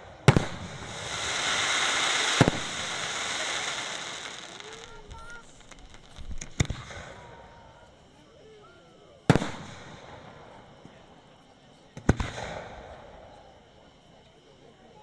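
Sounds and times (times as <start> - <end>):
small firework pops: 0.0 - 7.5, 9.3 - 11.0, 11.9 - 13.4
firework bangs: 0.0 - 7.6, 9.3 - 10.6, 12.0 - 13.1
firework crackling hiss: 0.0 - 8.4.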